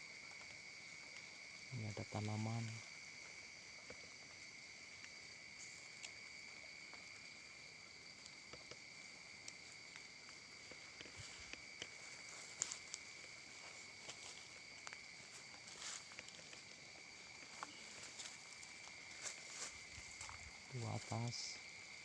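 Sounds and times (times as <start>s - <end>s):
insect chorus drone: 0.0s - 22.0s
footsteps in undergrowth: 5.0s - 21.3s.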